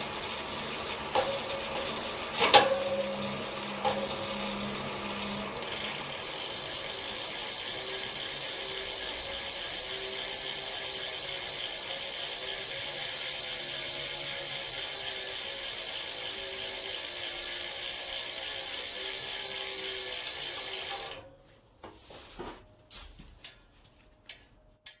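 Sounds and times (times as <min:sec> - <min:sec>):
bicycle chain running over cassette: 0:00.0 - 0:21.2
scattered clicks and knocks: 0:01.1 - 0:05.3.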